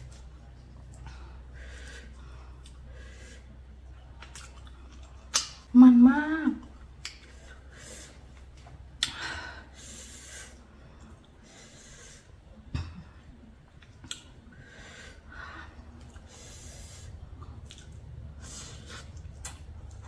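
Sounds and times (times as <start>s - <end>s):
person chewing food: 3.9s - 5.6s, 17.3s - 20.0s.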